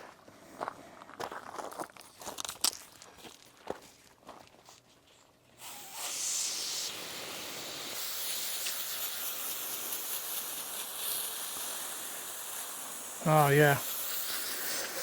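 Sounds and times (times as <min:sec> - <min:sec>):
steady hissing: 0:05.6 - 0:15.0.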